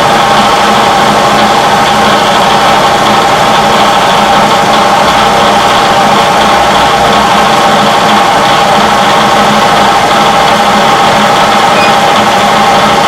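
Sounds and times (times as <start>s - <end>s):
milling machine humming and whining: 0.0s - 13.0s.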